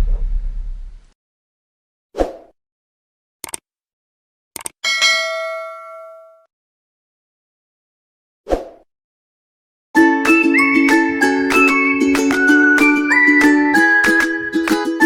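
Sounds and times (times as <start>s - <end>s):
deep boom: 0.0s - 1.1s
quick clicks: 3.4s - 3.6s, 4.6s - 4.8s
bell-like ding: 4.8s - 6.5s.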